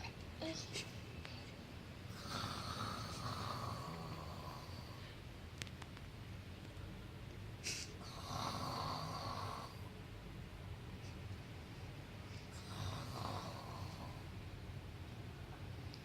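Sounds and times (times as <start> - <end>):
snoring: 2.1 - 5.0, 8.0 - 9.8, 12.5 - 14.3.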